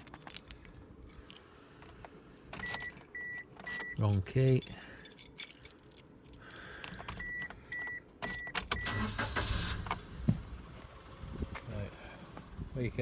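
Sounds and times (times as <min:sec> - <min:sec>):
car keys jangling: 0:00.0 - 0:10.3
car engine starting and idling: 0:06.8 - 0:13.0.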